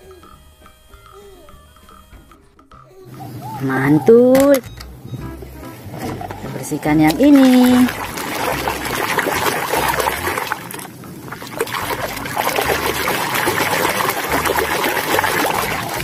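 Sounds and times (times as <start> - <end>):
water pouring and splashing: 5.7 - 16.0.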